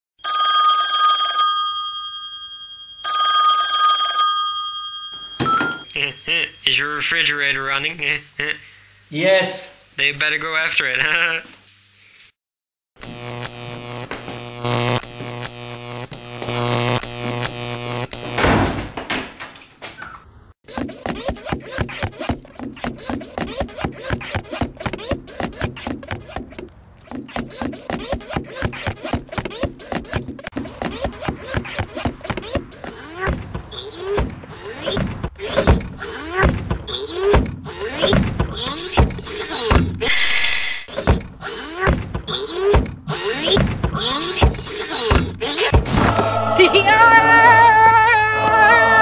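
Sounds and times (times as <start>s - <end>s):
person singing: 46.0s - 49.0s.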